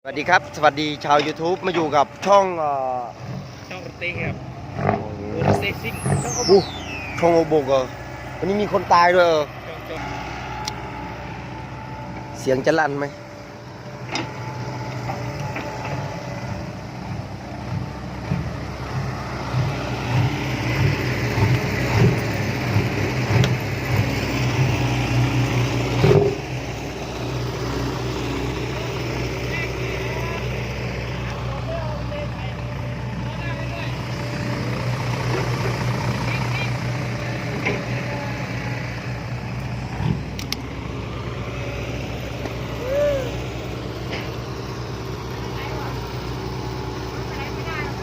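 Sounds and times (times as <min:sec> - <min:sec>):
engine with open exhaust revving: 0:00.1 - 0:48.0
rising and falling tone: 0:05.3 - 0:11.6
sharp clicks: 0:40.4 - 0:40.6.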